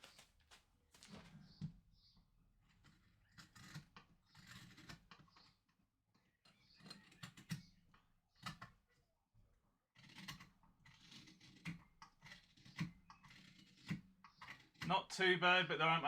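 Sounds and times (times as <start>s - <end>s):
knife scraping and cutting: 2.9s - 5.0s, 10.0s - 14.9s.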